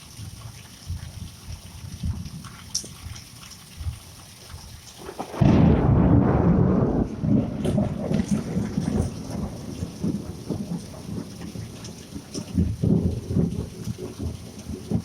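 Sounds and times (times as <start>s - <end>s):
rain: 0.0s - 15.0s
loud thunderclap: 5.0s - 15.0s
thunder rumbling: 5.0s - 15.0s.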